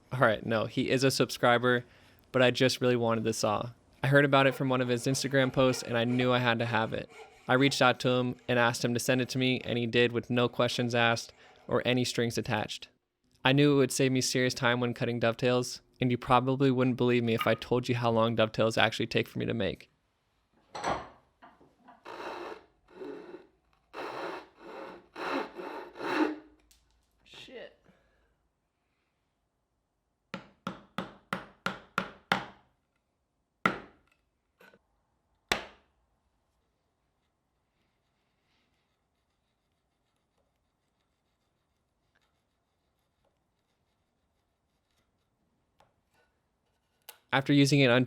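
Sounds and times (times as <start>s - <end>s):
coping saw rasping through wood: 4.3s - 9.7s, 22.0s - 26.5s.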